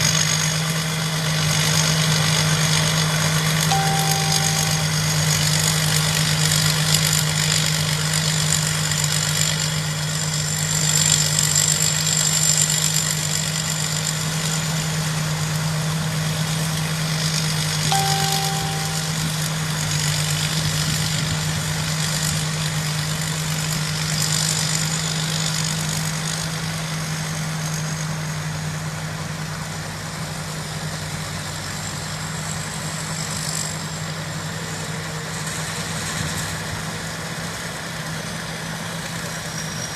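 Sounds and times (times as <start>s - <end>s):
short beep: 3.7s - 5.3s, 17.9s - 19.4s
thin high whine: 3.7s - 5.4s, 17.9s - 19.5s.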